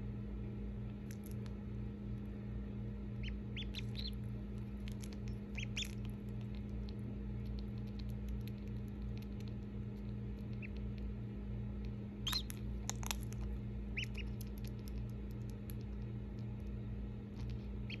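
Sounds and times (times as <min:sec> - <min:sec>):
steady low hum: 0:00.0 - 0:18.0
duckling peeping: 0:03.1 - 0:04.4, 0:05.0 - 0:06.2, 0:10.4 - 0:11.0, 0:12.2 - 0:12.6, 0:13.9 - 0:14.8, 0:17.5 - 0:18.0.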